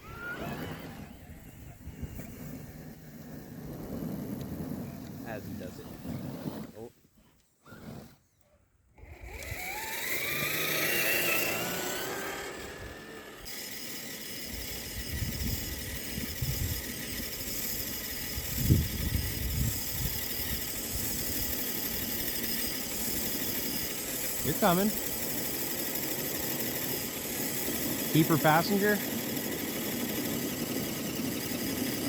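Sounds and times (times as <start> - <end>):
small electric motor whining: 0.0 - 5.2, 8.9 - 32.0
wind noise on microphone: 14.5 - 21.6.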